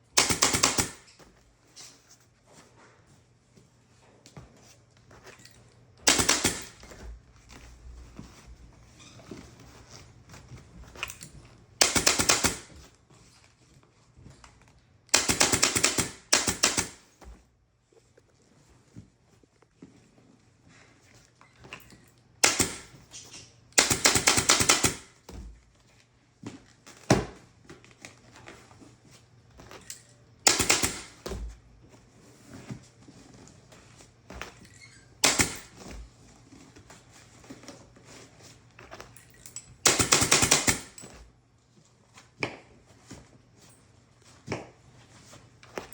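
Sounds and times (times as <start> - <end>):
staple gun firing: 6.1 - 6.8, 11.8 - 12.7, 15.2 - 17.0, 22.4 - 23.0, 23.8 - 25.1, 30.5 - 31.3, 35.2 - 35.8, 39.9 - 41.0.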